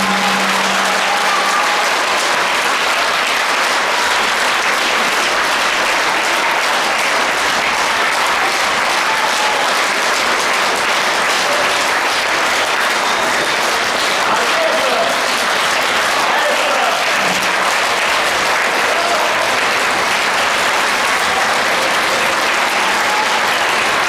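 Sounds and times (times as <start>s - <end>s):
low musical note: 0.0s - 2.3s
audience applauding: 0.0s - 24.0s.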